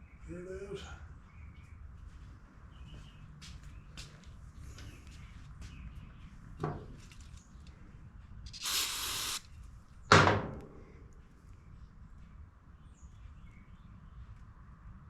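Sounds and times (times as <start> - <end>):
spray hiss: 8.5 - 9.4.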